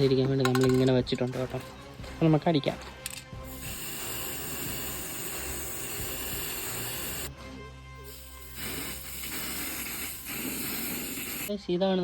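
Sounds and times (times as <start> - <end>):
spray-paint can hissing: 3.4 - 7.3, 8.0 - 11.5.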